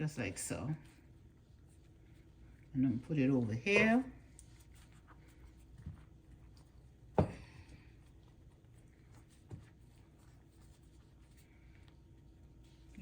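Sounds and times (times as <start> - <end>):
faint steady hum: 0.0 - 13.0
soft kitchen knocks: 7.2 - 7.6.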